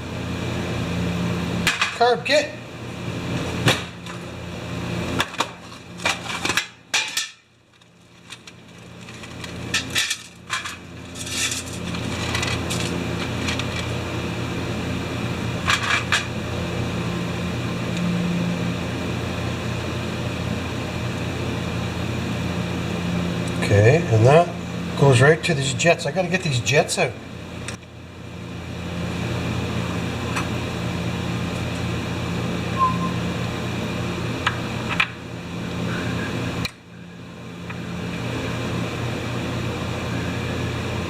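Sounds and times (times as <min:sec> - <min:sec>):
steady low hum: 0:00.0 - 0:41.0.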